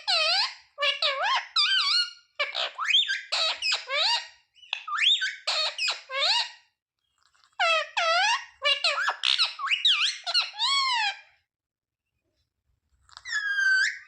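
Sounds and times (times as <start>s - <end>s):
parrot squeaky chattering: 0.0s - 6.6s, 7.6s - 11.3s, 13.1s - 14.0s.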